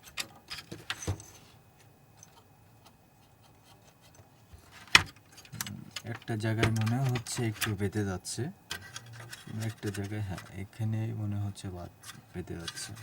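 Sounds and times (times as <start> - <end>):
light clicks of handled parts: 12.0 - 13.0.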